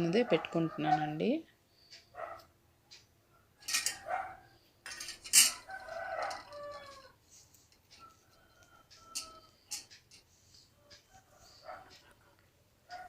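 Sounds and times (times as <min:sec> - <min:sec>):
oil lamp chimney clinking: 0:03.6 - 0:04.2, 0:04.8 - 0:07.1.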